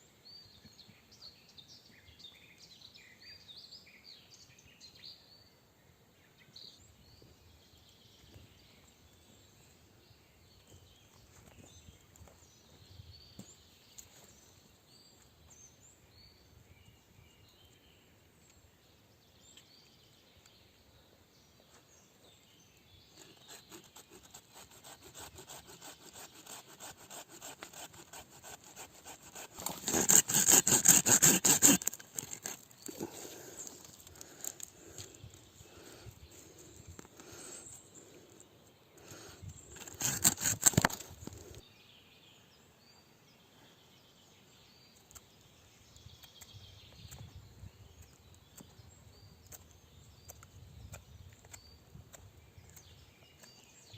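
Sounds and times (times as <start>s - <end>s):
faint birdsong: 0.0s - 53.9s
hand saw cutting wood: 23.2s - 35.0s, 39.0s - 41.5s.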